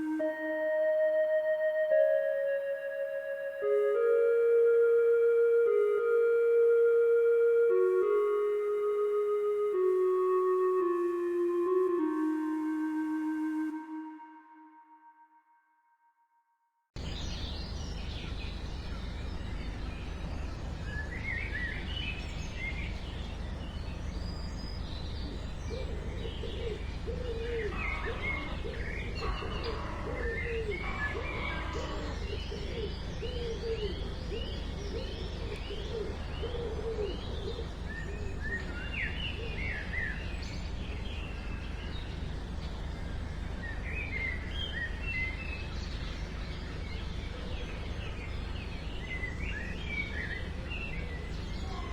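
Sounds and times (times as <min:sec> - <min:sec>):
birds chirping: 0:17.0 - 0:51.9.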